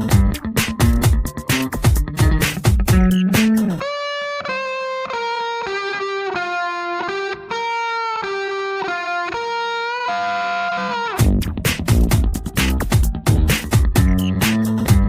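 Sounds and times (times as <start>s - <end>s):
bass and drums beat: 0.0s - 3.8s, 11.2s - 15.0s
electric guitar melody: 0.0s - 15.0s.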